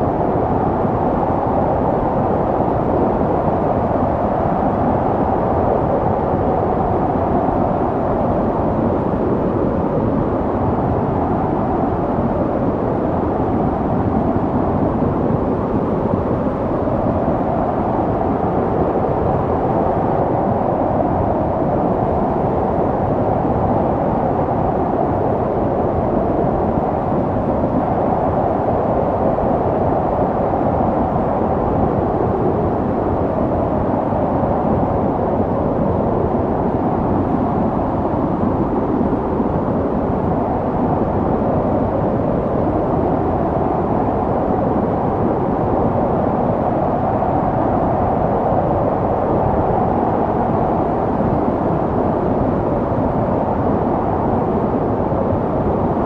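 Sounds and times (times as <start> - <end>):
snowstorm wind blowing: 0.0 - 56.0.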